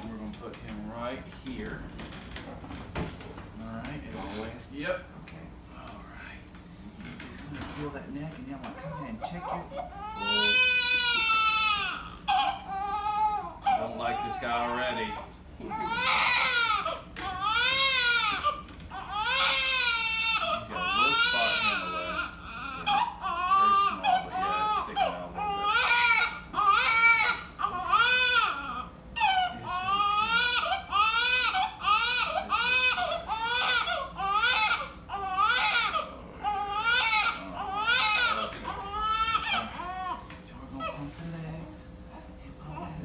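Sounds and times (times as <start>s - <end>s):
newborn baby crying: 8.8s - 40.2s.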